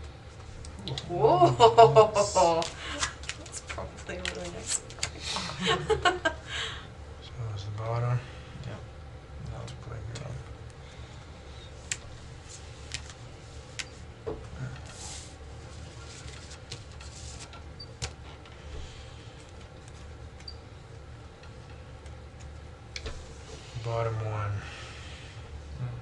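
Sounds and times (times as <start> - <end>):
steady low hum: 0.0 - 26.0
cards rustling: 15.0 - 17.5.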